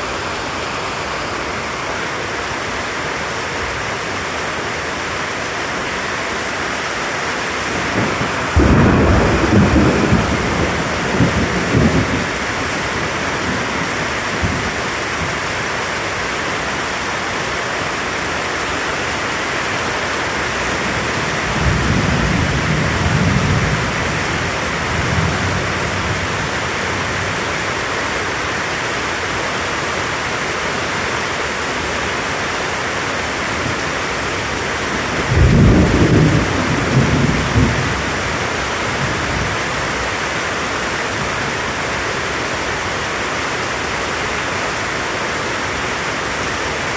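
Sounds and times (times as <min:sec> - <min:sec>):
rain hiss: 0:00.0 - 0:46.9
thunder rumbles: 0:07.7 - 0:15.4, 0:20.6 - 0:27.6, 0:33.6 - 0:39.9.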